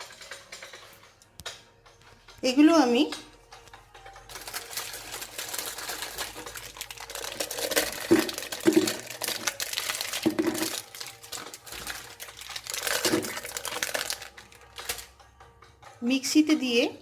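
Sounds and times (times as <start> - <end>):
wrappers crinkling and tearing: 4.3 - 15.1.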